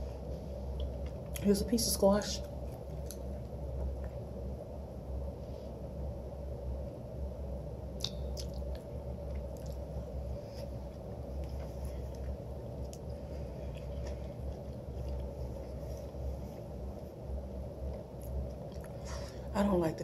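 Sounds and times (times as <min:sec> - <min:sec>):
low hum: 0:00.0 - 0:20.0
wet mouth clicks: 0:08.0 - 0:08.9
person chewing: 0:08.0 - 0:16.2.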